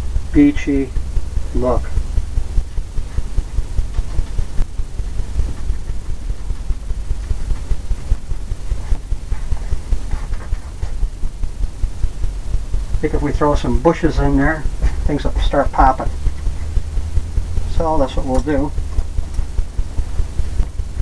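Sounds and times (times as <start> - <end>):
brush scrubbing on canvas: 8.7 - 11.0.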